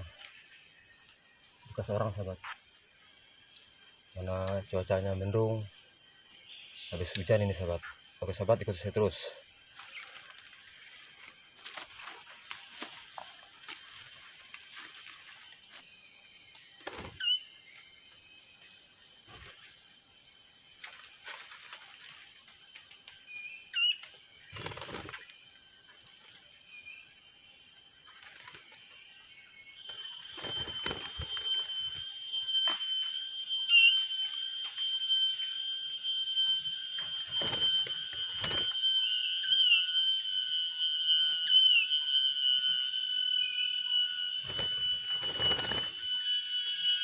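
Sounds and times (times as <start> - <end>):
high-pitched ringing tone: 0.0 - 47.0
rustle in undergrowth: 9.7 - 17.3, 20.8 - 23.0
bird whistled call: 17.2 - 17.8, 23.3 - 24.8, 29.4 - 47.0.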